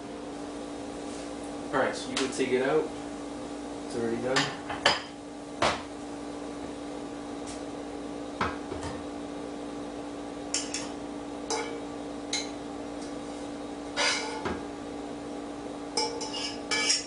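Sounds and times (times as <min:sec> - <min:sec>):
steady low hum: 0:00.0 - 0:17.0
metal utensil clinking on pot: 0:16.0 - 0:17.0.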